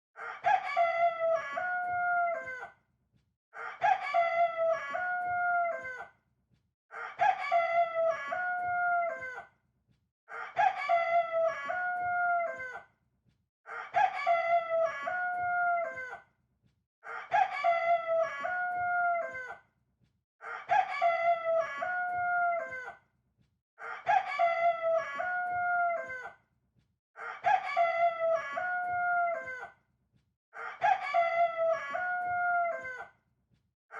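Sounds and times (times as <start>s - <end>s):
rooster crowing: 0.2s - 2.7s, 3.6s - 6.0s, 6.9s - 9.4s, 10.3s - 12.8s, 13.7s - 16.2s, 17.1s - 19.6s, 20.4s - 23.0s, 23.8s - 26.3s, 27.2s - 29.7s, 30.6s - 33.1s.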